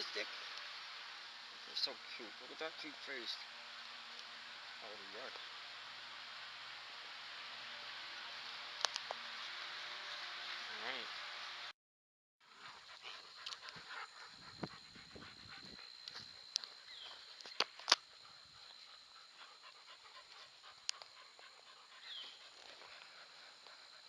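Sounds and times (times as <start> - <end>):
dogs panting: 12.4 - 24.0.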